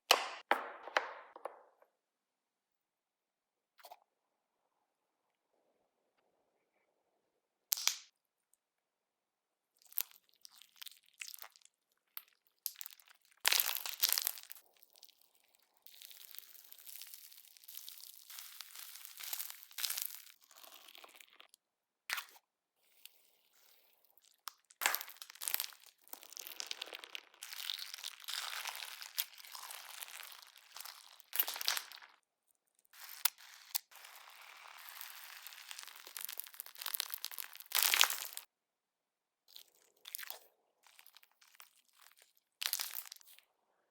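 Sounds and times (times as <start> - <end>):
hands squishing slime: 9.8 - 21.5, 23.0 - 32.2, 33.0 - 38.5, 39.5 - 43.4.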